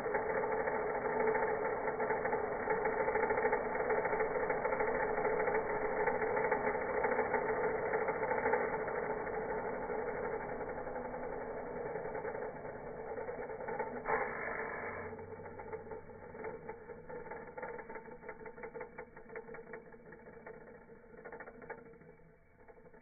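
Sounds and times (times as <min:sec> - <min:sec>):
vacuum cleaner motor drone: 0:08.2 - 0:15.7.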